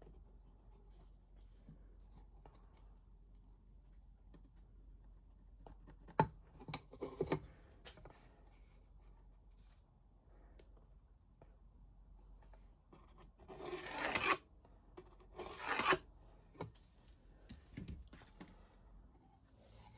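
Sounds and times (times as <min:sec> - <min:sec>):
tools scratching and rubbing: 0:13.4 - 0:14.4, 0:15.4 - 0:16.1.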